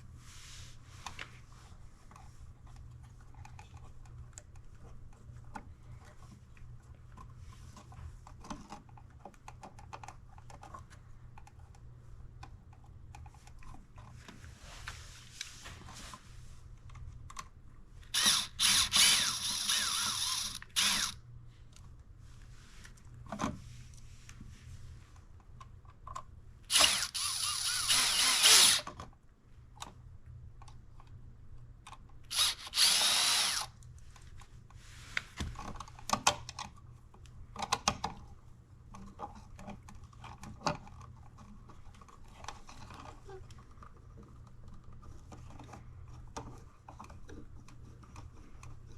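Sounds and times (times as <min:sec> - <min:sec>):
faint handling noises: 0:00.0 - 0:18.2, 0:21.0 - 0:26.7, 0:28.9 - 0:48.9
cordless drill backing out screws: 0:26.7 - 0:28.9, 0:32.3 - 0:33.7.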